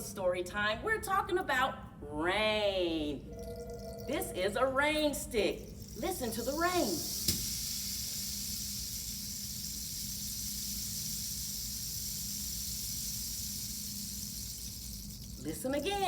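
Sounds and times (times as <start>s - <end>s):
rain stick pellets trickling: 5.5s - 16.0s.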